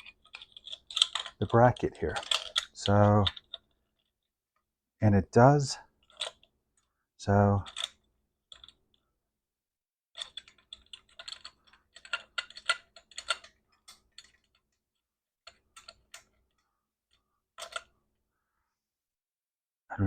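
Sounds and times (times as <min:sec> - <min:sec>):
small metal parts clicking: 0:00.0 - 0:04.1, 0:06.0 - 0:06.9, 0:07.6 - 0:08.9, 0:10.1 - 0:17.9.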